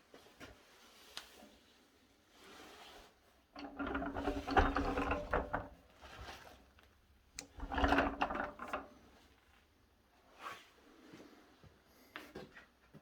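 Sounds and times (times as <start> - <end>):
wooden table rumbling and rattling: 3.6 - 5.9, 7.5 - 9.0.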